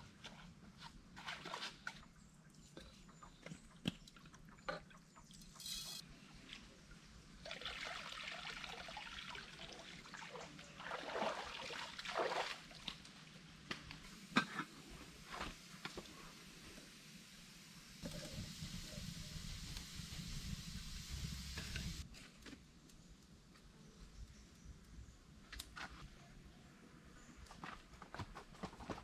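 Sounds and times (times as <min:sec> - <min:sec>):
water trickling and pouring: 0:07.4 - 0:13.1
water sloshing: 0:09.8 - 0:13.0.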